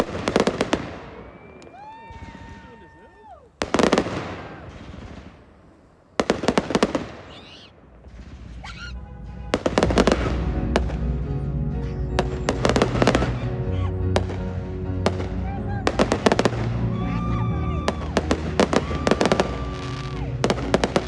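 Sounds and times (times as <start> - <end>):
fireworks bangs and crackles: 0.0 - 21.0
music with held notes: 9.0 - 21.0.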